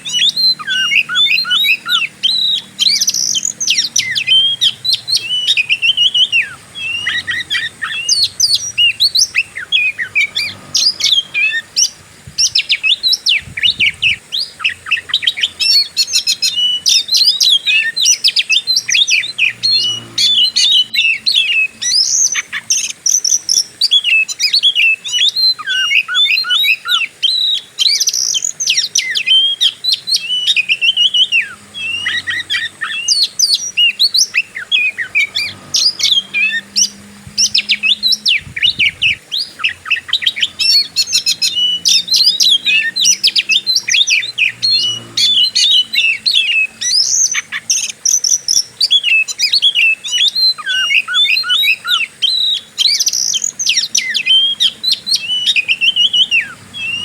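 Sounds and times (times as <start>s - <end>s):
bird singing whistles and chirps: 0.0s - 57.0s.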